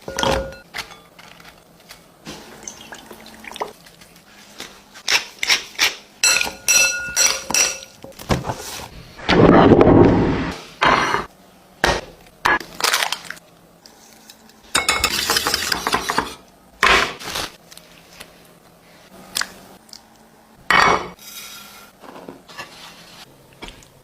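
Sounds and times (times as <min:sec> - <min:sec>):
utensils clattering on dishes: 0:06.2 - 0:08.0.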